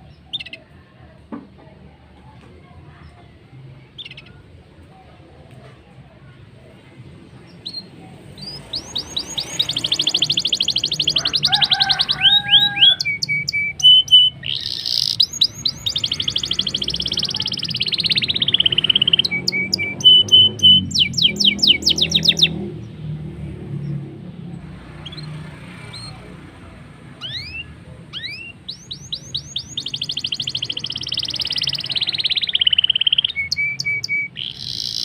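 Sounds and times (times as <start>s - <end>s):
canary singing trills: 0.0s - 0.8s, 3.8s - 4.6s, 7.4s - 23.2s, 24.6s - 35.0s.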